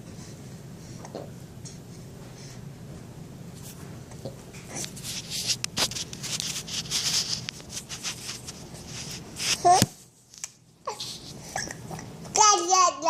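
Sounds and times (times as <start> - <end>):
steady low hum: 0.0 - 13.0
soft rustling and scratching: 3.5 - 11.5.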